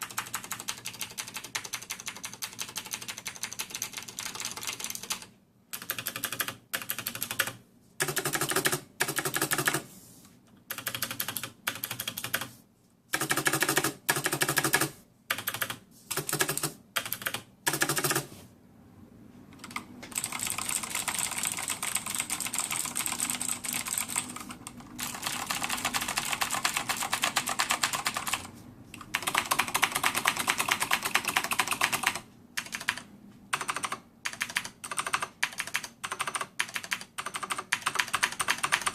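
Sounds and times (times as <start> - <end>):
mechanical keyboard typing: 0.0 - 9.9, 10.7 - 12.5, 13.2 - 18.3, 19.6 - 38.9.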